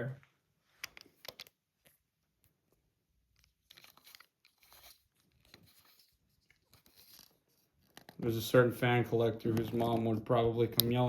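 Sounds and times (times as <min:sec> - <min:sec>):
faint rustling: 0:03.4 - 0:08.4.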